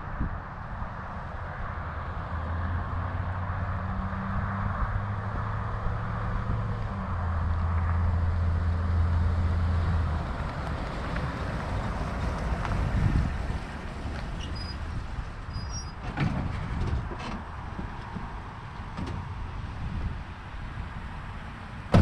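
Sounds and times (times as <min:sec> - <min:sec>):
wind noise: 0:00.0 - 0:22.0.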